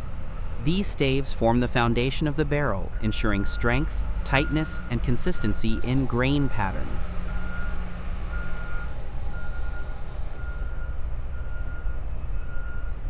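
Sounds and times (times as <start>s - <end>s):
low engine rumble: 0.0s - 13.0s
reversing alarm beeping: 0.7s - 13.0s.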